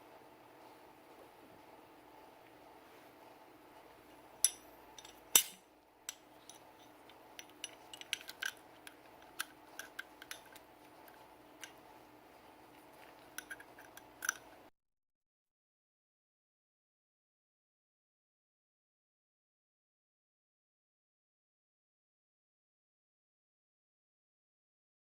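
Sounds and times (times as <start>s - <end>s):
pistol parts clicking: 4.4s - 10.7s, 13.3s - 14.5s.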